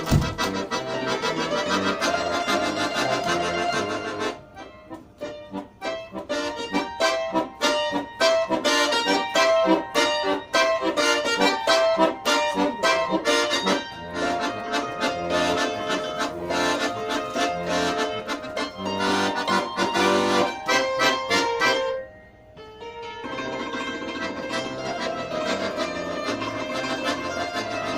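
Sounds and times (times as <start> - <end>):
accordion playing: 0.0 - 27.9.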